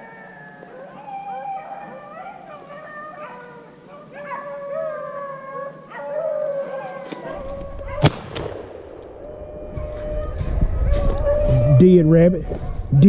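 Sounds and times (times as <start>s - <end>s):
dogs baying and howling: 0.0s - 8.1s, 9.2s - 11.8s
shotgun shot: 8.0s - 9.1s.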